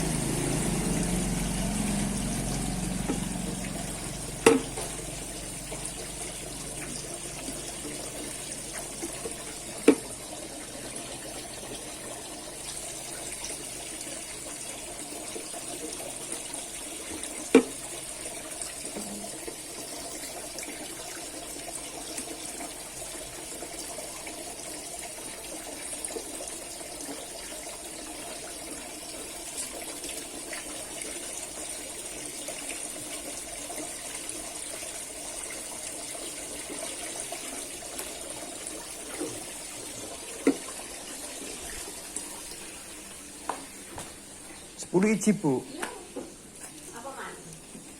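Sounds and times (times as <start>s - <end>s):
rain hiss: 0.0s - 10.6s.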